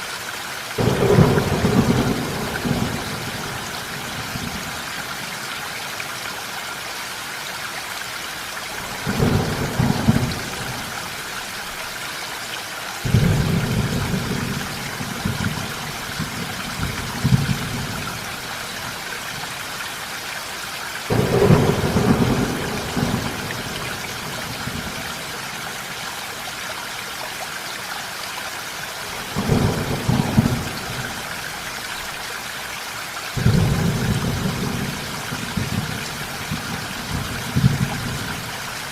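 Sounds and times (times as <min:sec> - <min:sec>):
steady rain: 0:00.0 - 0:38.9
thunder rumbling: 0:00.8 - 0:04.8, 0:09.0 - 0:11.0, 0:21.1 - 0:25.2, 0:29.2 - 0:31.4, 0:33.4 - 0:38.4.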